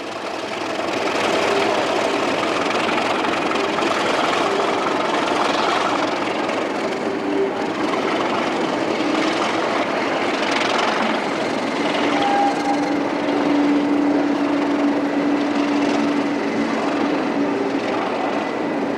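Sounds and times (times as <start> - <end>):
diesel locomotive engine running: 0.0 - 18.9
brief tones: 11.0 - 15.0.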